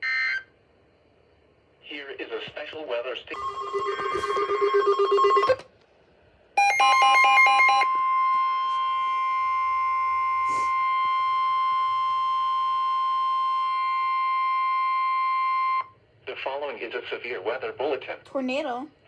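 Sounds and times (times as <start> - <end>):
rapid alternating electronic beeps: 3.4 - 5.6
steady loud alarm tone: 3.4 - 5.6, 6.6 - 15.9.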